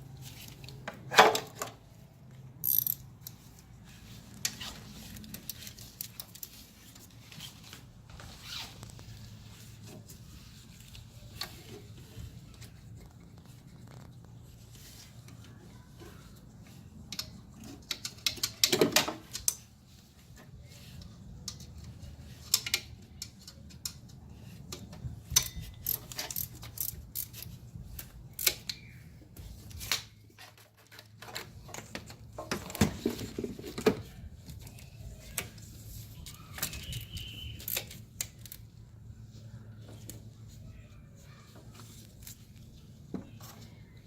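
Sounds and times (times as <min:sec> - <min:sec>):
hand ratchet clicking: 0:02.6 - 0:03.4.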